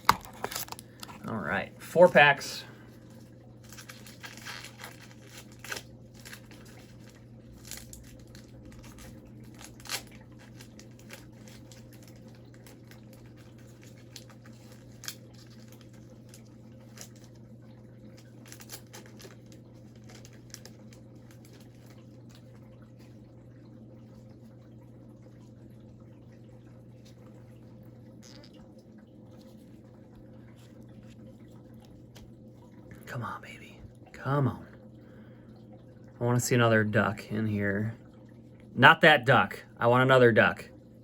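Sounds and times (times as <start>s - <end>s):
steady low hum: 0.0s - 41.0s
foil wrapper tearing and crinkling: 3.7s - 17.3s, 18.4s - 21.6s.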